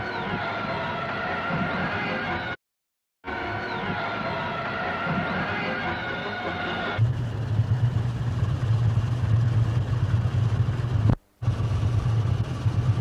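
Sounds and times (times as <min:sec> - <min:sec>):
ship engine rumbling: 0:03.8 - 0:13.0.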